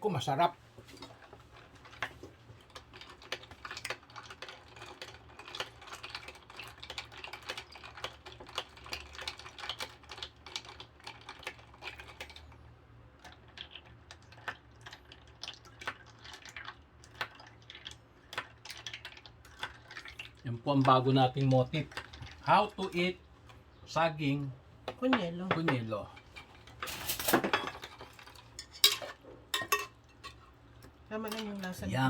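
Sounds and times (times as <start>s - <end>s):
low steady hum: 11.5s - 32.0s.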